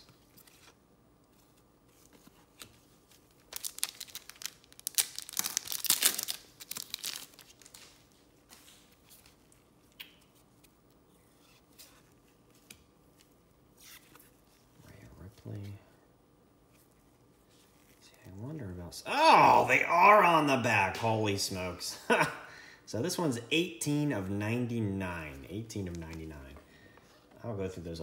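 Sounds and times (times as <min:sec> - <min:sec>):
foil wrapper crinkling and tearing: 0:03.1 - 0:08.9.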